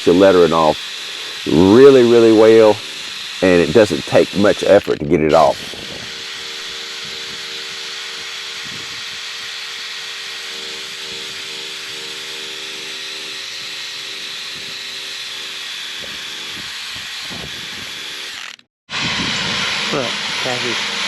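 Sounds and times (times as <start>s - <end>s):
rubber wheel rubbing hiss: 0.0s - 8.0s
drill motor whirring: 0.0s - 21.0s.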